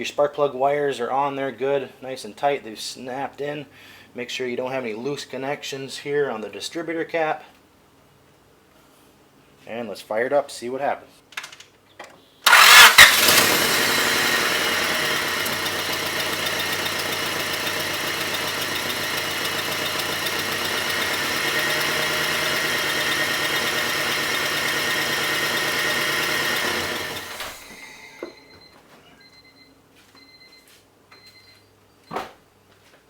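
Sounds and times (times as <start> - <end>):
car engine starting and idling: 12.5 - 28.3.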